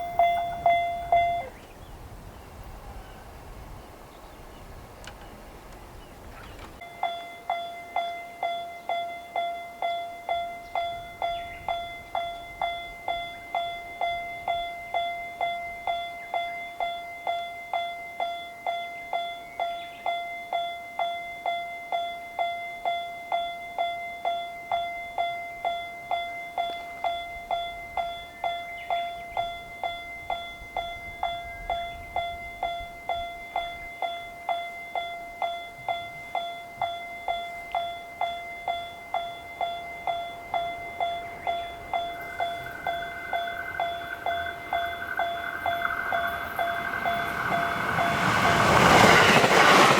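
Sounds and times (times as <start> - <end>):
railroad crossing alarm bell ringing: 0.0 - 1.6, 6.8 - 49.9.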